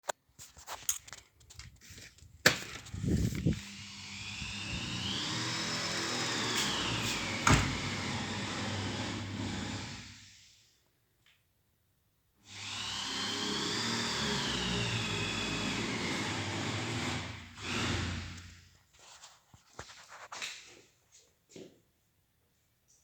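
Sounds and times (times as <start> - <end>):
power tool motor whine: 2.9 - 10.2, 12.5 - 18.6
renovation knocks and clatter: 4.9 - 9.7.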